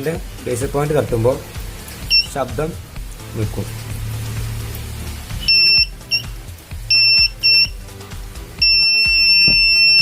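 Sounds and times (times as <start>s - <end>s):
alarm buzzer tone: 5.4s - 6.3s, 6.9s - 7.7s, 8.6s - 10.0s.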